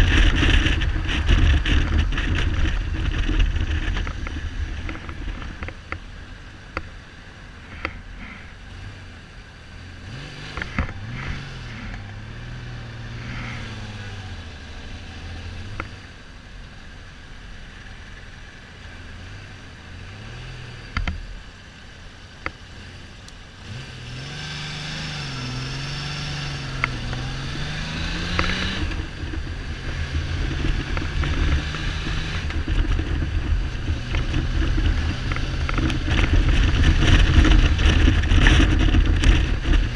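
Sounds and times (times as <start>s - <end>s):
wind noise on microphone: 0.0s - 6.0s, 24.4s - 39.9s
motorcycle engine revving: 0.0s - 21.6s, 22.5s - 39.9s.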